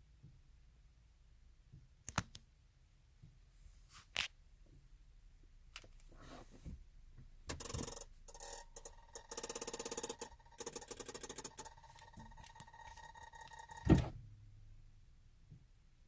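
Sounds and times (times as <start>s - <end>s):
rapid electrical clicking: 7.5s - 14.1s.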